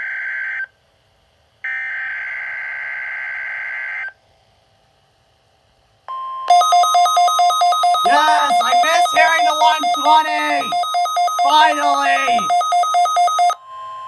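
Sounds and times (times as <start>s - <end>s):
rapid electronic beeps: 6.5s - 13.6s.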